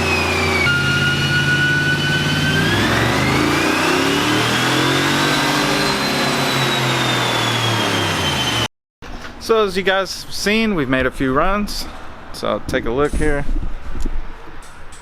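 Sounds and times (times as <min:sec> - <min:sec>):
high whine: 0:00.0 - 0:08.7
truck engine revving: 0:00.0 - 0:08.7.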